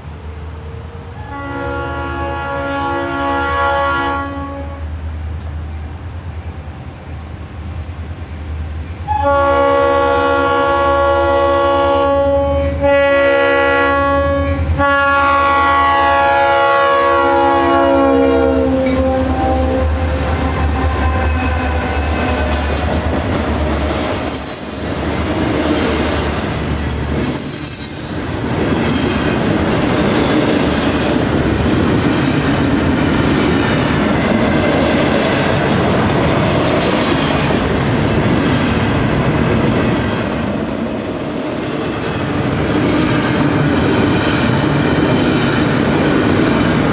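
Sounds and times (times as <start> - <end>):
train air horn: 1.2 - 5.0, 9.0 - 22.7
train wheels clattering on rails: 19.8 - 46.9
wheel squeal: 21.2 - 25.2, 25.8 - 28.6.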